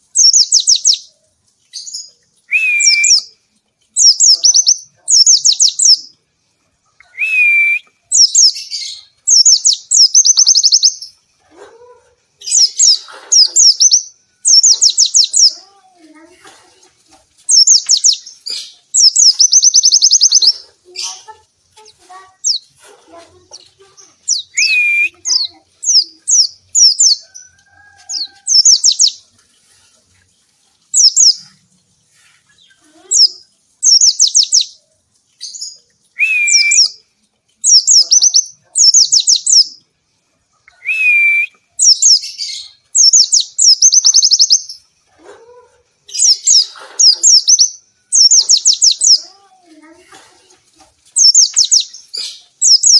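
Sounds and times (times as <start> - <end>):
bird twittering: 0.2 - 1.1, 4.0 - 6.1, 7.1 - 11.0, 17.5 - 20.6, 33.2 - 34.8, 37.7 - 39.8, 40.8 - 44.7, 46.1 - 49.2, 51.2 - 52.9.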